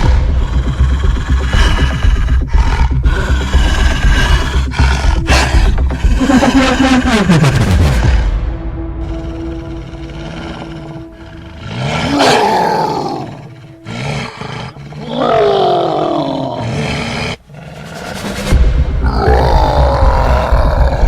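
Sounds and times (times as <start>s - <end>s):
low rumble: 0.0s - 11.3s
animal roar: 9.0s - 21.0s.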